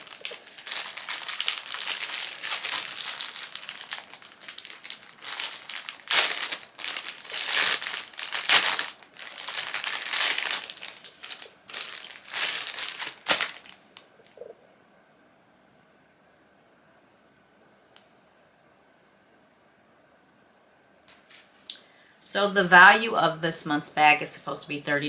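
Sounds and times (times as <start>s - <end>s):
packaging crinkling: 0.0s - 14.4s.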